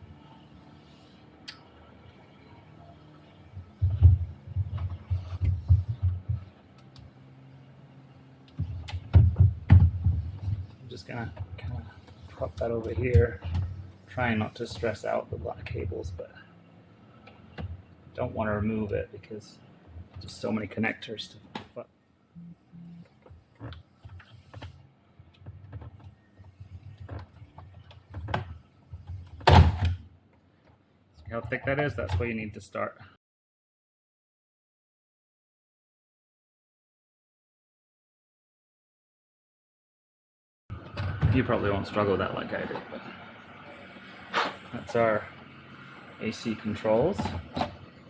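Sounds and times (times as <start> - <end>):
muffled low thumps: 3.6 - 6.5
low steady hum: 22.2 - 23.8.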